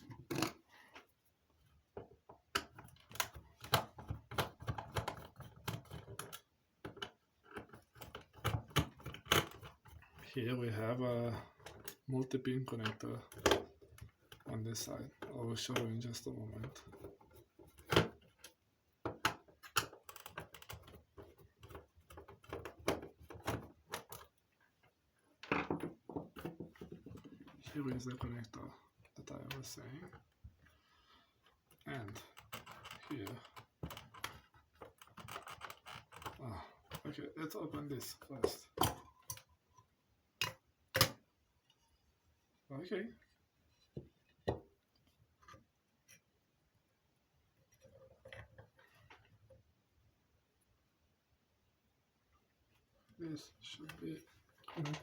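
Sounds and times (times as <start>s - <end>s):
clicks and knocks of handled casing: 2.0s - 10.3s, 16.6s - 24.3s, 31.7s - 37.1s.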